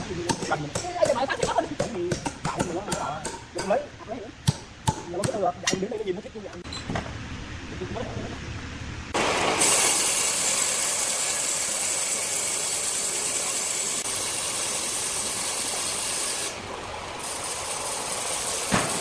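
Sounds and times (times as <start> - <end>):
circular saw cutting wood: 9.2 - 19.0.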